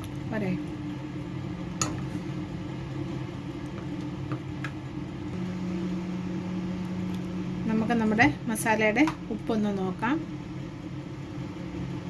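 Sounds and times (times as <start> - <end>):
small motor humming: 1.5 - 8.5.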